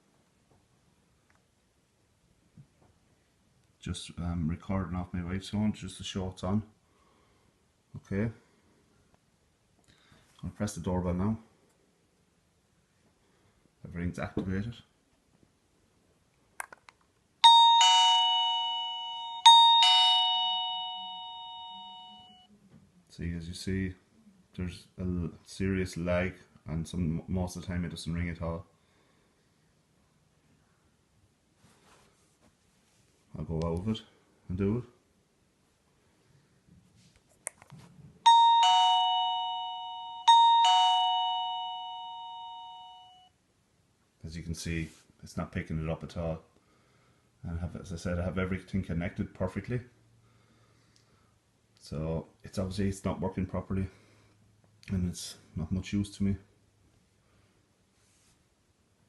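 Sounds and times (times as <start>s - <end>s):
doorbell ding-dong chime: 17.4s - 22.5s, 38.3s - 43.3s.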